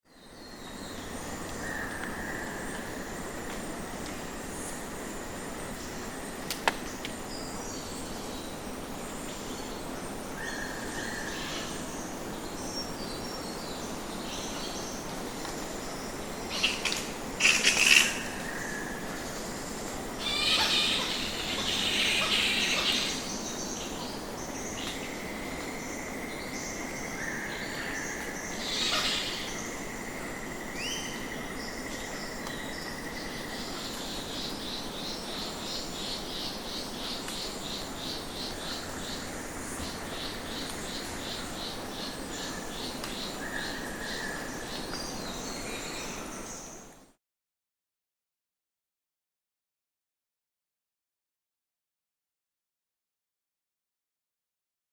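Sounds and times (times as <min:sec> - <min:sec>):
birds calling and chirping: 0:15.7 - 0:29.8.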